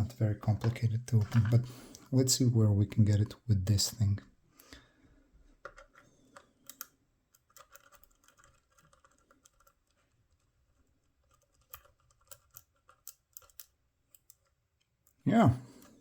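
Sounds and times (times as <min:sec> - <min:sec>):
tool clicking and scratching in lock: 0:05.6 - 0:15.2.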